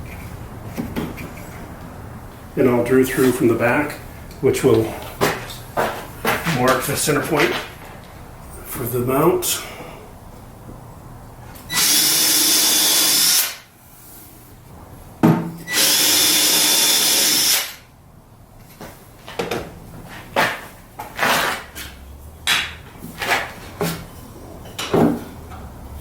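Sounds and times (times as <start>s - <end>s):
power drill whining through wood: 11.7s - 13.6s, 15.7s - 17.8s.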